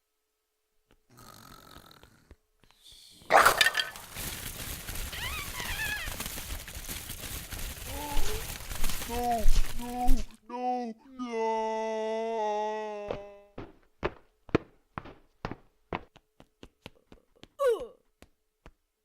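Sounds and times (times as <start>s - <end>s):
groaning voice: 9.3s - 13.6s.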